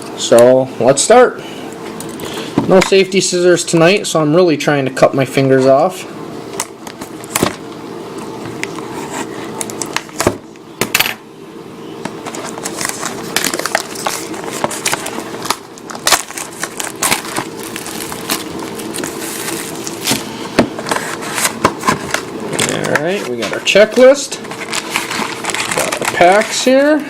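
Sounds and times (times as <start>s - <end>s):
steady low hum: 0.0s - 27.0s
plastic wrap crinkling: 12.4s - 20.3s, 23.8s - 26.9s.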